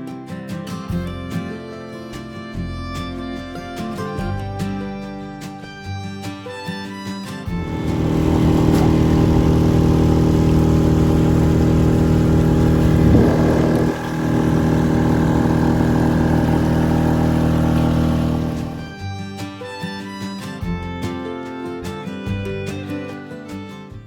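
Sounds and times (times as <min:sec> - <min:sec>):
loud engine running: 0:07.5 - 0:19.1.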